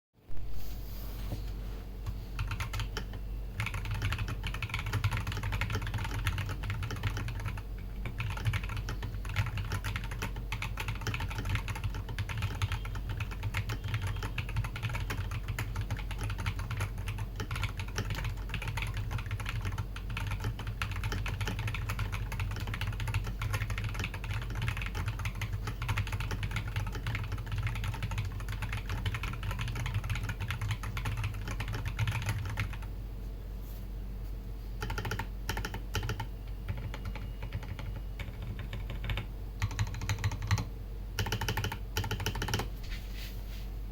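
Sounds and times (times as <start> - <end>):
typing on mechanical keyboard: 2.4 - 32.9, 34.8 - 42.7.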